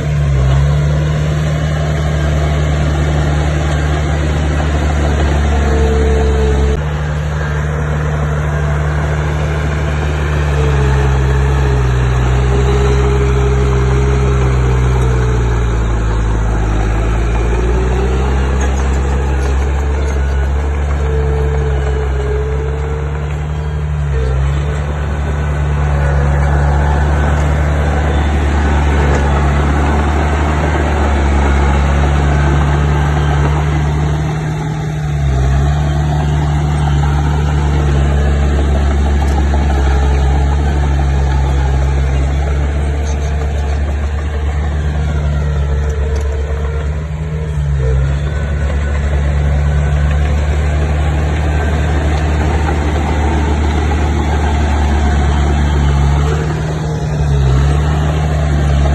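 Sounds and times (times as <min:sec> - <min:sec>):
bulldozer engine under load: 0:00.0 - 0:58.9.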